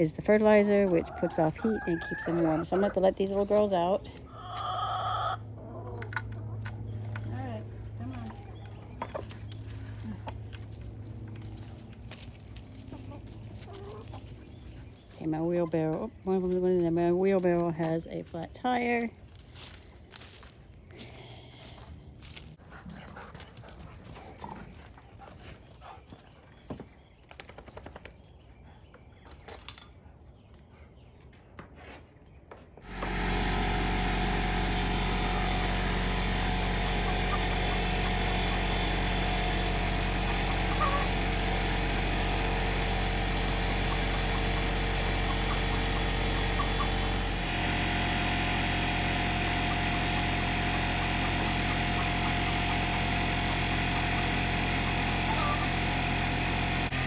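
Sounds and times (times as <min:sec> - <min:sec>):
air compressor running: 0:32.8 - 0:57.0.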